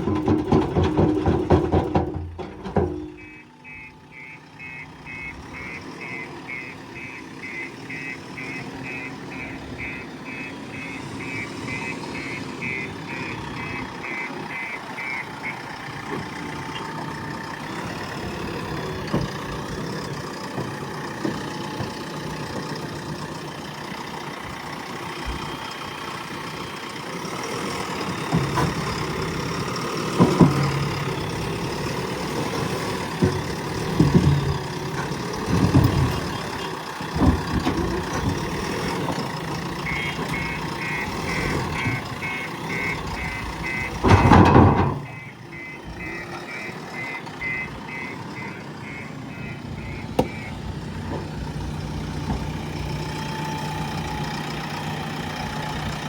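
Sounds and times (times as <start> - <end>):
diesel engine running: 0.0 - 56.0
reversing alarm beeping: 2.8 - 16.1, 39.8 - 50.8.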